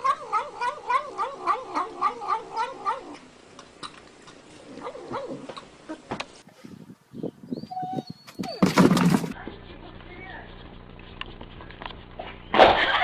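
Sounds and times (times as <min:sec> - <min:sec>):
animal wavering cries: 0:00.0 - 0:03.2, 0:07.6 - 0:08.7.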